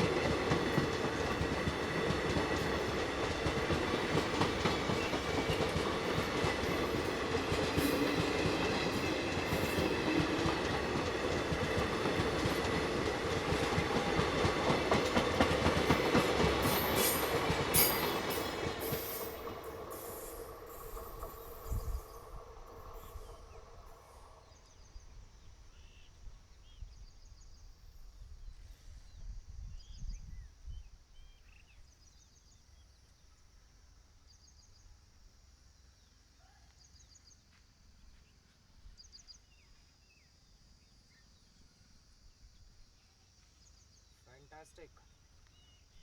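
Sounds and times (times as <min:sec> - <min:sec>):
train rumble: 0:00.0 - 0:25.3.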